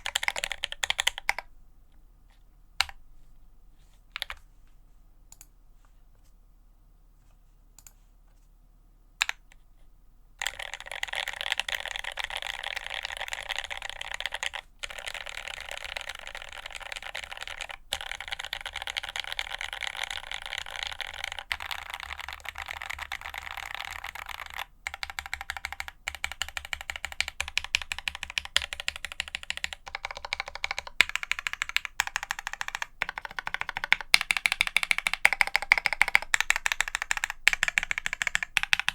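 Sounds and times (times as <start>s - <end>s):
rapid keyboard key-mashing: 0.0s - 1.4s, 10.4s - 38.9s.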